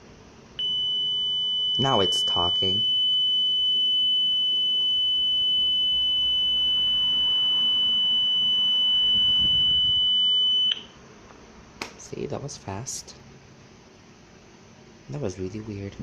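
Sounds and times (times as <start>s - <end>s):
high-pitched alarm tone: 0.6s - 10.9s.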